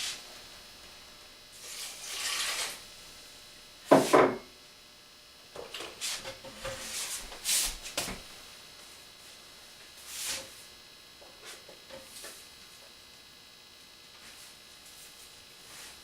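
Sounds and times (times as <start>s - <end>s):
kitchen utensils scraping: 1.6s - 2.8s.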